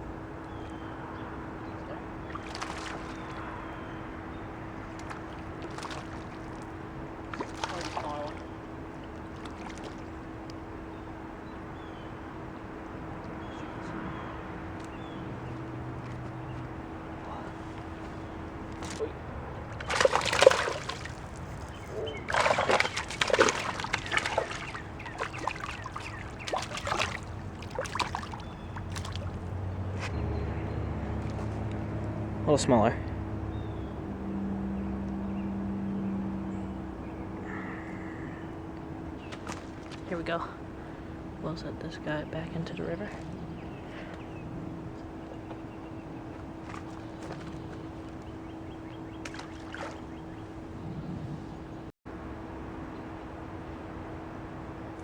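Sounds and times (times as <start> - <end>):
faint steady hum: 0.0 - 30.0, 30.6 - 55.0
fish thrashing in water: 2.2 - 3.7, 4.6 - 10.8, 18.6 - 29.7, 39.2 - 41.2, 42.8 - 50.8.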